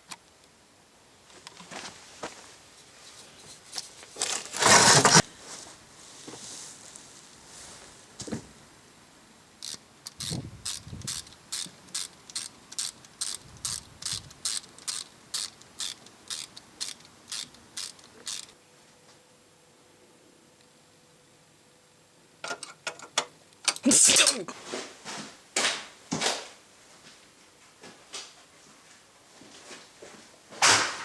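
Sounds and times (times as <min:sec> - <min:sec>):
short scraping burst: 0:04.3 - 0:05.2
sharp mechanical clicks: 0:09.6 - 0:18.6.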